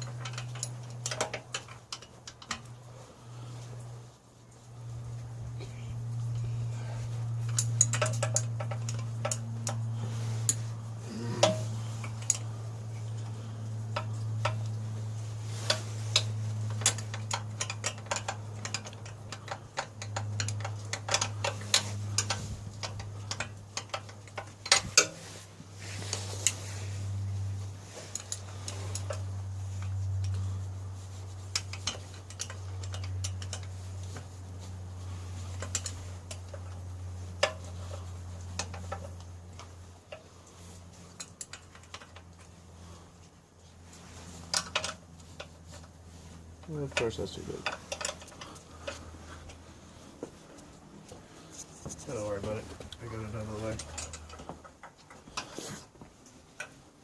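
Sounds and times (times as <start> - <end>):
metallic clicks of hand tools: 0.0 - 2.8, 7.4 - 9.9, 15.7 - 25.2
steady low hum: 0.0 - 57.0.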